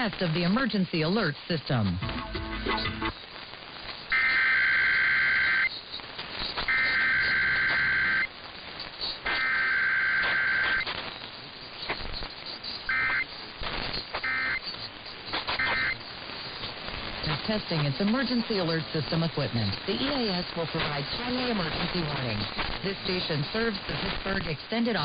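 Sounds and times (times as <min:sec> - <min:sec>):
shrill warbling data bursts: 0:15.6 - 0:16.0.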